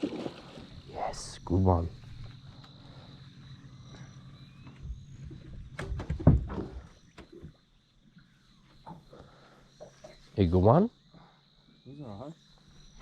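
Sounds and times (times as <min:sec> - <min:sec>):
low boat engine hum: 0:00.0 - 0:05.8.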